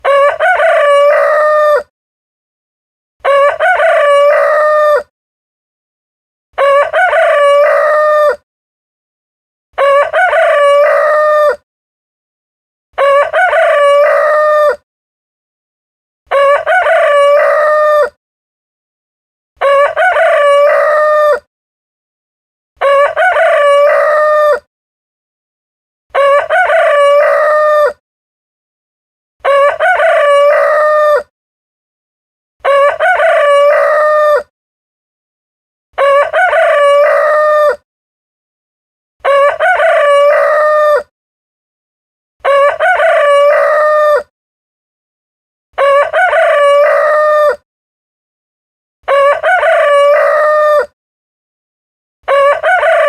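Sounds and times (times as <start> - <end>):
rooster crowing: 0.0 - 1.9, 3.2 - 5.1, 6.6 - 8.4, 9.8 - 11.6, 13.0 - 14.8, 16.3 - 18.2, 19.6 - 21.5, 22.8 - 24.7, 26.1 - 28.0, 29.4 - 31.3, 32.6 - 34.5, 36.0 - 37.8, 39.2 - 41.1, 42.4 - 44.3, 45.8 - 47.6, 49.1 - 50.9, 52.3 - 53.0.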